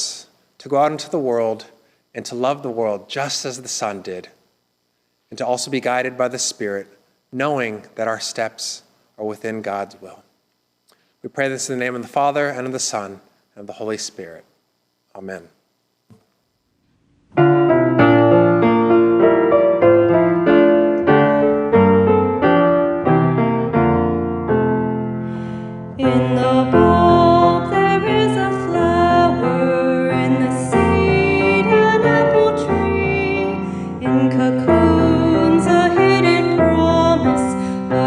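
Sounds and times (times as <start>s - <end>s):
piano music: 17.3s - 38.0s.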